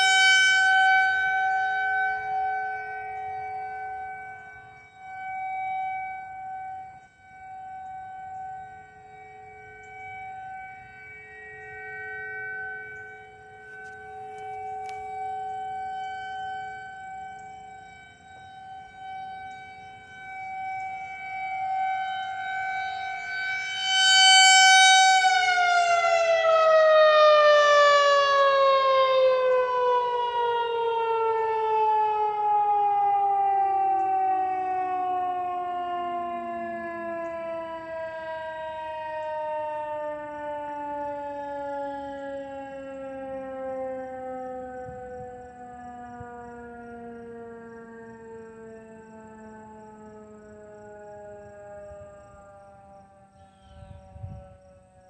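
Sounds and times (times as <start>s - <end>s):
tornado sirens wailing: 0.0s - 55.0s.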